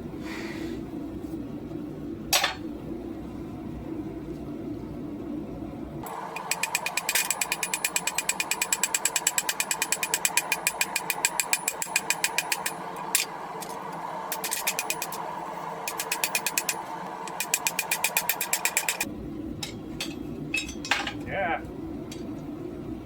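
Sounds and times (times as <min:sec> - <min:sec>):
rapid hammer blows on steel: 0:14.3 - 0:19.0.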